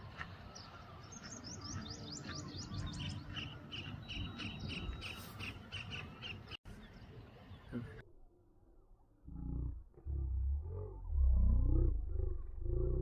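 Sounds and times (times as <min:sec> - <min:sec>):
bird chirping: 0:00.1 - 0:08.0.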